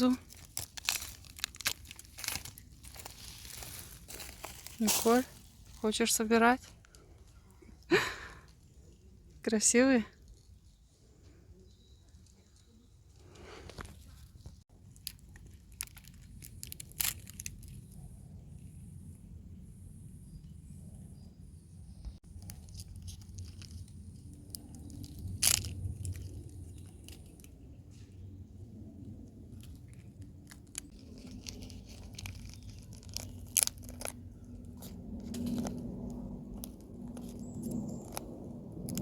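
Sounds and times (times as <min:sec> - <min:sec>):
mushrooms crunching and crackling: 0:00.0 - 0:08.8, 0:11.8 - 0:18.1, 0:22.2 - 0:28.1, 0:29.4 - 0:39.0.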